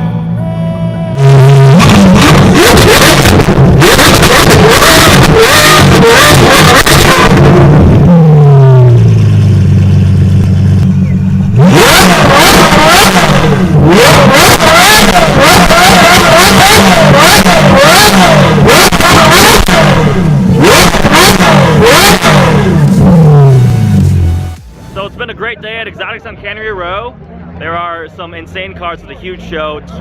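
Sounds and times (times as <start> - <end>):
car engine revving: 1.0 - 25.3
sharp exhaust cracks: 1.2 - 24.7.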